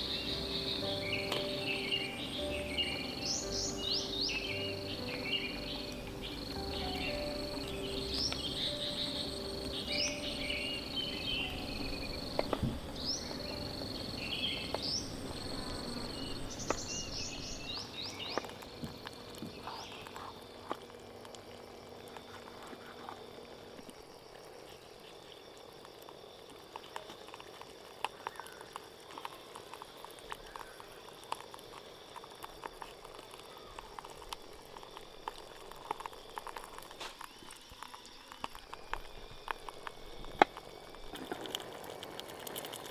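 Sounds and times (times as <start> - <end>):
birds chirping: 0.0 - 23.0
campfire crackling: 0.0 - 42.9.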